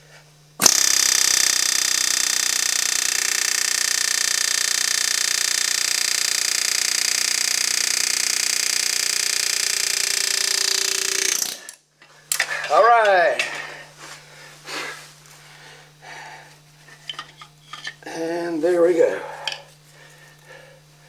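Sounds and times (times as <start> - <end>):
power tool chattering: 0.6 - 13.7.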